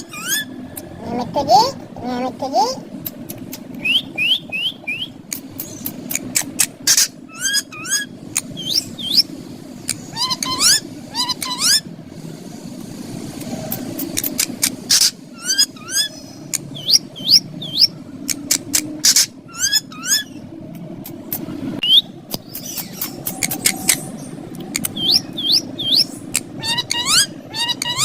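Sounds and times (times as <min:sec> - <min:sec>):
parrots chirping: 0:00.0 - 0:00.5, 0:03.1 - 0:11.9, 0:13.7 - 0:20.4, 0:21.8 - 0:28.0
low background hum: 0:00.0 - 0:28.0
sharp clicks: 0:03.0 - 0:03.9, 0:05.3 - 0:06.8, 0:13.4 - 0:14.8, 0:18.2 - 0:18.9, 0:22.3 - 0:25.0.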